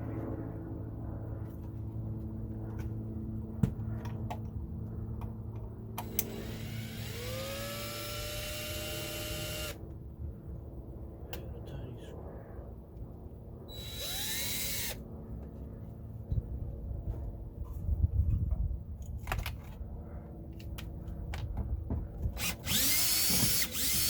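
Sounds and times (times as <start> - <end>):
small electric motor whining: 6.0 - 9.8, 13.7 - 15.0, 22.4 - 24.0.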